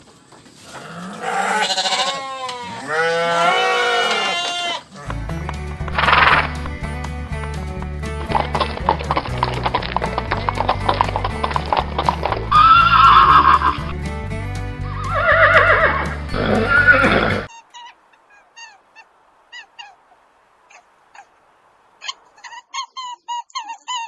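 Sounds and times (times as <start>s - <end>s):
hooves clip-clopping: 4.1s - 17.5s
background music: 5.0s - 17.5s
horse neighing: 10.0s - 13.9s, 14.8s - 17.5s.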